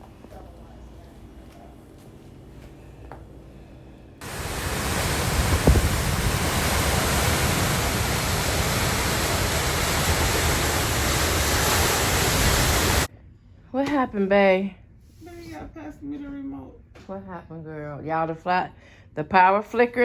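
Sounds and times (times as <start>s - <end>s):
wind and rain rushing: 4.2s - 13.1s.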